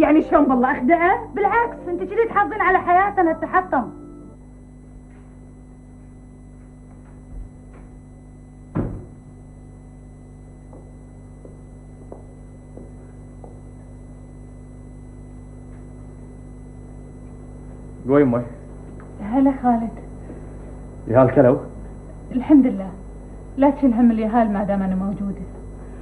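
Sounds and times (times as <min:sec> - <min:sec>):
low electrical hum: 0:00.0 - 0:26.0
soft knock: 0:08.7 - 0:09.2
dull thud: 0:08.7 - 0:09.3.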